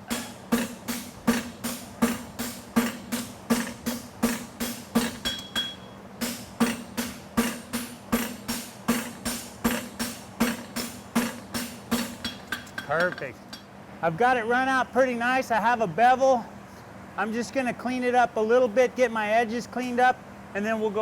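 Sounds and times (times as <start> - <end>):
hammer striking steel on anvil: 0.0 - 13.7.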